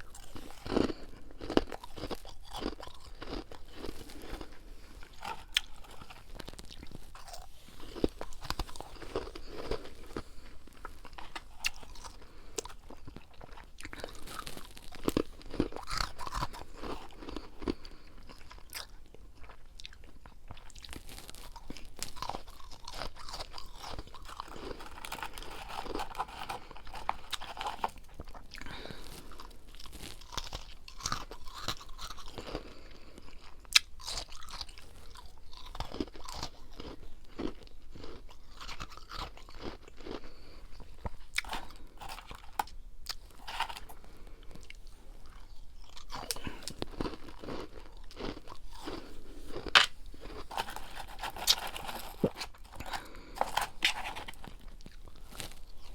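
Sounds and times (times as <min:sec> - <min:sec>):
frost being chewed: 0:00.0 - 0:55.9.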